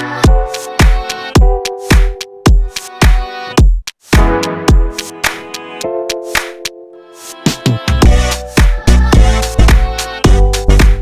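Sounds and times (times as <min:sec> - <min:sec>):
electronic music: 0:00.0 - 0:11.0
kick-drum beat: 0:00.2 - 0:05.0, 0:08.0 - 0:11.0.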